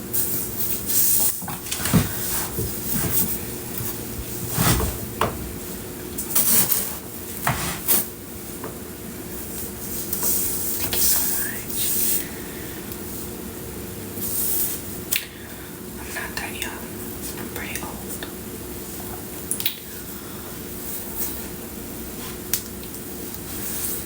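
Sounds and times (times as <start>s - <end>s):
rubbing and scraping: 1.5s - 5.1s.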